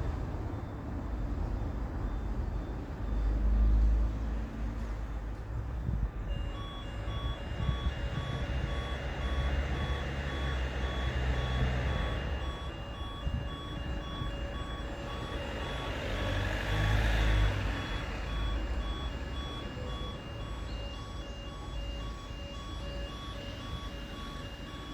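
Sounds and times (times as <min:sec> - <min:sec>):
electronic beeping: 0:06.3 - 0:24.9.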